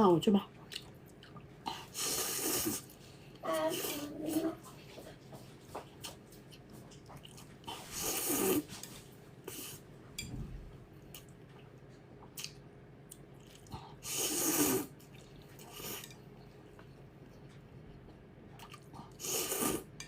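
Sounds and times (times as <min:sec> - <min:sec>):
loud slurps: 0:01.9 - 0:02.9, 0:14.0 - 0:14.9, 0:19.2 - 0:19.9.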